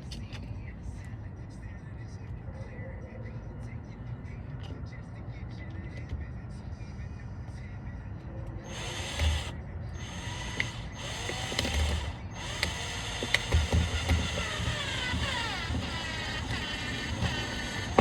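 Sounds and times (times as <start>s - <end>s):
power drill driving screws: 8.7s - 18.0s.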